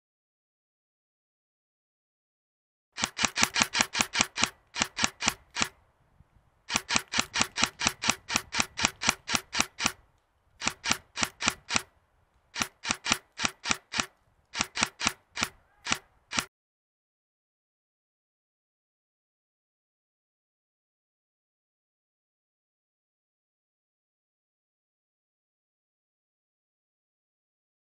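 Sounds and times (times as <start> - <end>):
airsoft rifle firing: 3.0 - 5.7, 6.7 - 10.0, 10.6 - 11.9, 12.6 - 16.5.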